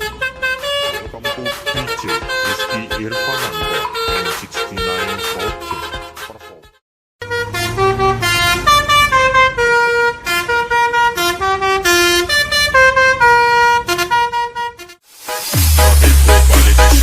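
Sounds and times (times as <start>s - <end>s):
bus air horn melody: 0.0s - 17.0s
electronic dance music: 0.6s - 6.8s, 15.1s - 17.0s.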